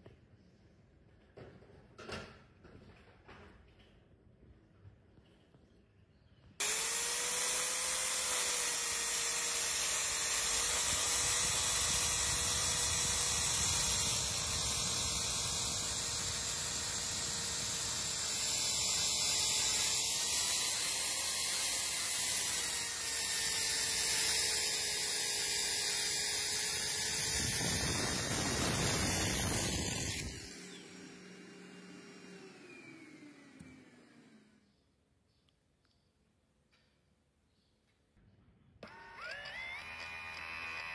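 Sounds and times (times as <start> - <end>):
blade grinding tile: 6.6 - 32.4
power tool whining: 6.6 - 34.7, 38.8 - 40.9.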